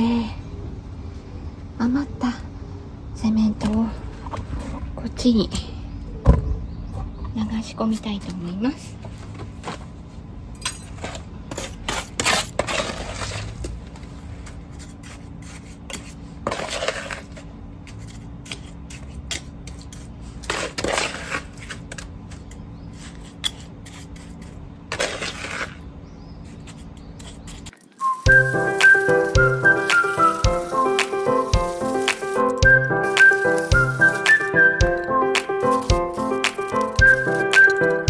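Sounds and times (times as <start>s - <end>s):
hand tool scraping wet cement: 11.5s - 13.7s, 14.7s - 21.8s, 22.9s - 25.8s, 26.4s - 38.0s.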